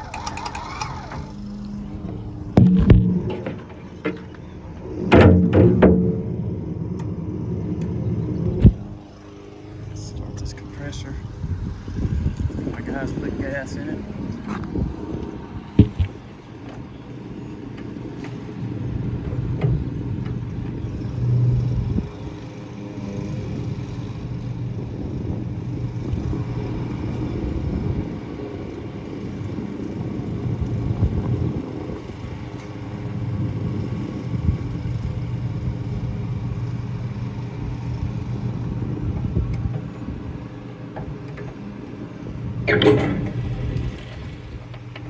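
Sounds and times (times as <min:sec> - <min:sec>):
clunks and rattles from truck bed: 0:00.0 - 0:09.1, 0:14.3 - 0:22.0, 0:38.0 - 0:45.0
diesel truck engine idling: 0:00.0 - 0:45.0.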